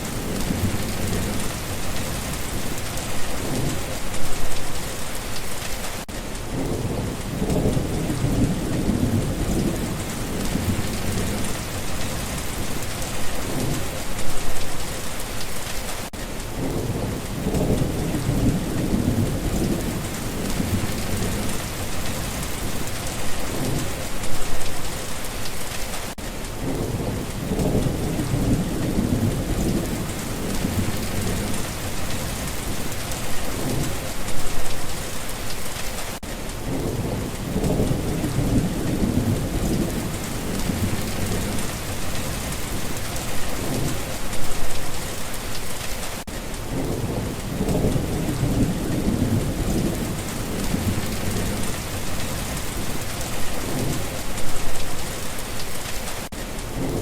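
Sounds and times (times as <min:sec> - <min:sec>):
thunder rumbling: 0:00.0 - 0:05.0, 0:06.4 - 0:14.9, 0:16.5 - 0:25.0, 0:26.5 - 0:35.7, 0:36.6 - 0:55.5
steady rain falling: 0:00.0 - 0:57.0.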